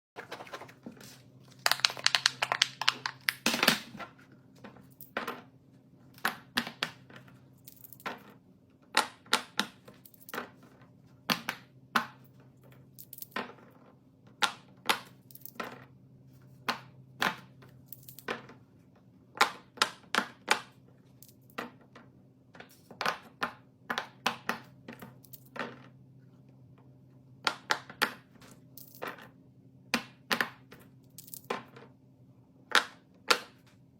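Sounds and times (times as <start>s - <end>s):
small objects clicking and crinkling: 1.5s - 3.8s, 7.6s - 8.3s, 12.9s - 13.5s, 15.2s - 15.7s, 17.8s - 18.3s, 28.8s - 29.2s, 30.8s - 31.7s.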